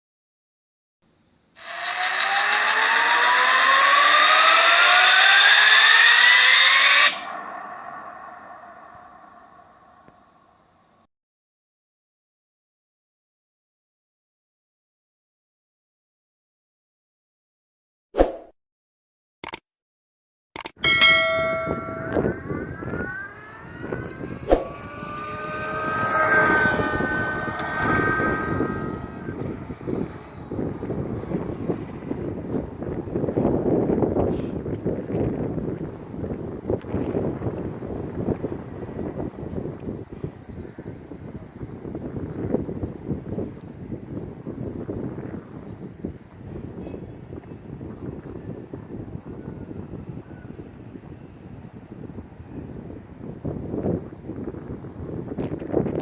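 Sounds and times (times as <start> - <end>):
electric motor whine revving: 1.6 - 9.8, 21.5 - 32.8
rough rolling noise: 1.6 - 10.0
sharp click: 19.4 - 19.6, 20.6 - 20.8.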